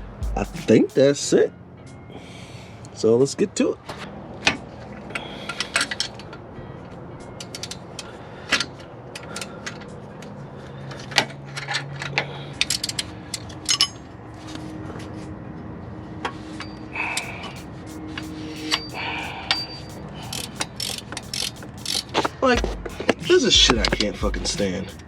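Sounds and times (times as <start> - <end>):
ratchet wrench clicking: 17.2 - 25.0.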